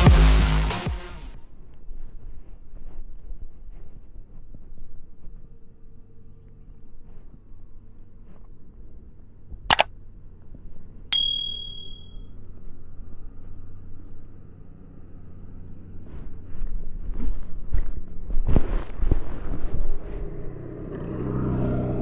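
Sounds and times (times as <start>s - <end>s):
low steady hum: 1.4s - 18.4s
sharp click: 11.2s - 12.1s
bell-like ding: 11.2s - 12.2s.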